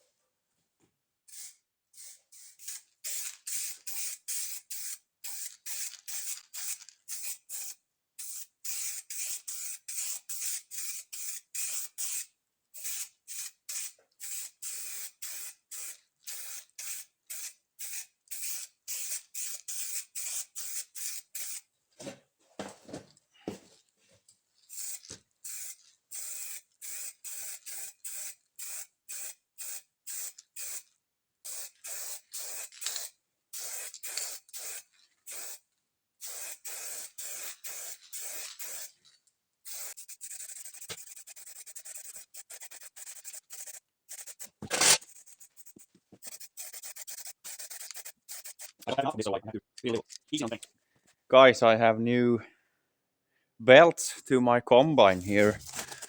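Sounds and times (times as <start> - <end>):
aerosol spray can hissing: 1.3 - 21.6, 24.7 - 30.8, 31.5 - 35.6, 36.2 - 38.9, 39.7 - 48.9.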